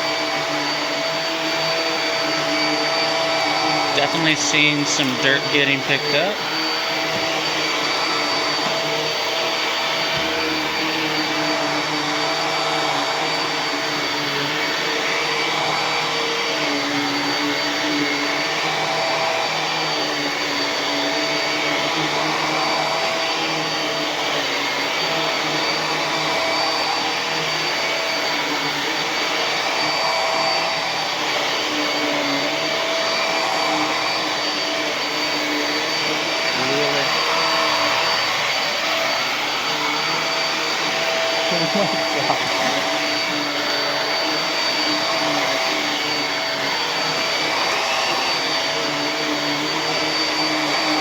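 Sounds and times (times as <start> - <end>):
upright vacuum running on carpet: 0.0 - 51.0.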